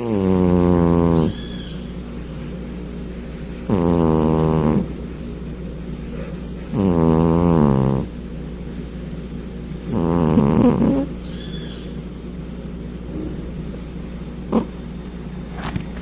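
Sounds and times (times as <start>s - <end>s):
cat snoring: 0.0s - 1.5s, 3.7s - 4.9s, 6.7s - 8.1s, 9.9s - 11.1s, 14.5s - 14.8s.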